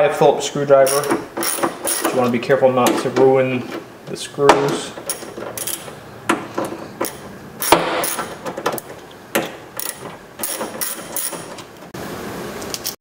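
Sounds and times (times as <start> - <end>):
ratchet clicking: 0.9 - 2.2, 5.0 - 6.0, 9.8 - 11.6.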